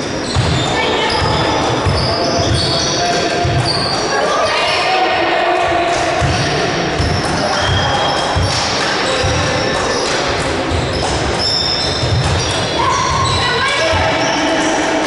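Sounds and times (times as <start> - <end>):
shoes squeaking: 0.0 - 4.2, 7.0 - 15.0
voices in large hall: 0.0 - 15.0
basketball bouncing on gym floor: 0.2 - 4.0, 6.2 - 14.2.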